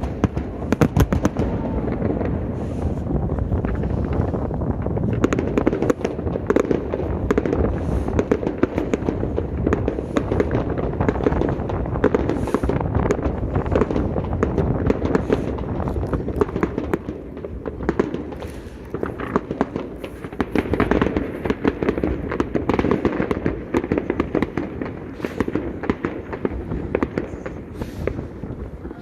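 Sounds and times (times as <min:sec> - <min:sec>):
fireworks bangs and crackles: 0:00.0 - 0:29.0.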